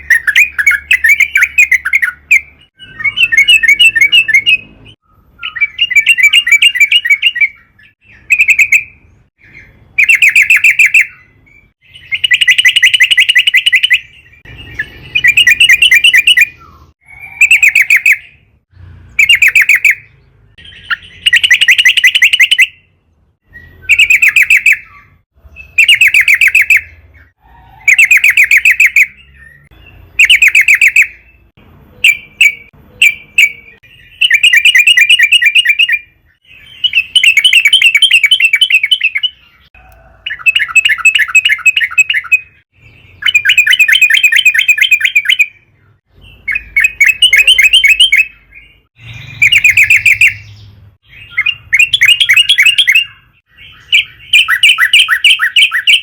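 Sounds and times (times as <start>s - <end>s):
bird bubbling chatter song: 0.0s - 18.5s, 19.1s - 22.9s, 23.6s - 31.3s, 32.0s - 45.7s, 46.3s - 56.0s.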